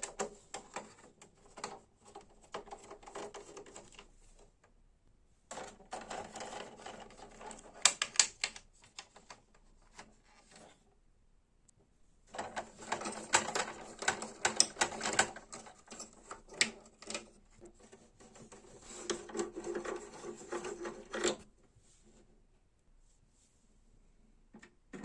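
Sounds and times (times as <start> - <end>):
printer mechanism clicking and rattling: 0.0 - 4.5, 5.5 - 10.7, 12.3 - 21.4.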